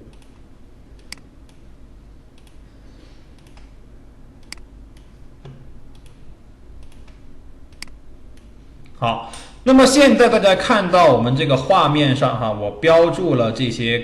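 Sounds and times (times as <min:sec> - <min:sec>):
computer clicks: 0:00.0 - 0:01.6, 0:02.3 - 0:02.6, 0:03.3 - 0:03.8, 0:04.4 - 0:05.2, 0:05.9 - 0:06.2, 0:06.8 - 0:08.5
faint low hum: 0:00.0 - 0:14.0.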